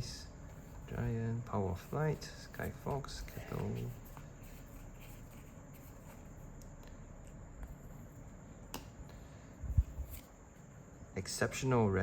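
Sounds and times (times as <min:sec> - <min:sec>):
trading cards rustling: 0:01.7 - 0:08.3.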